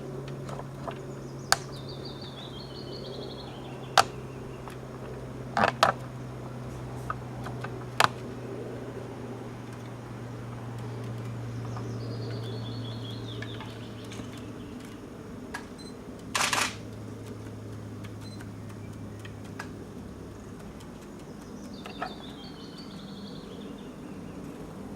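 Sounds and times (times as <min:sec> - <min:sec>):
small birds twittering: 0:00.0 - 0:24.9
steady low hum: 0:00.0 - 0:24.9
faint clicks: 0:03.8 - 0:24.9
loud burst of noise: 0:16.3 - 0:16.8.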